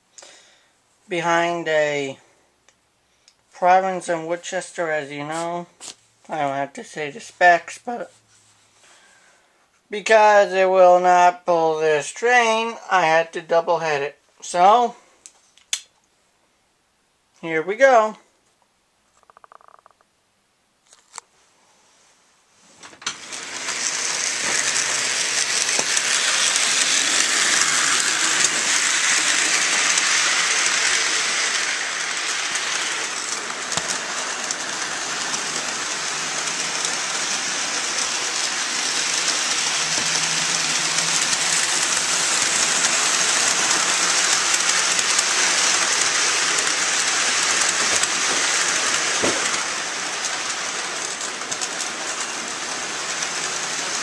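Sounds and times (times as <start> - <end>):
model train clattering on track: 22.9 - 54.0.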